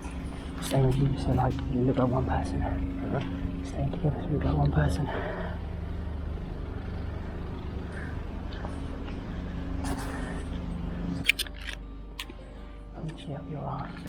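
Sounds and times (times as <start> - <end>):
low engine hum: 0.0 - 14.0
sharp clicks: 11.2 - 12.4.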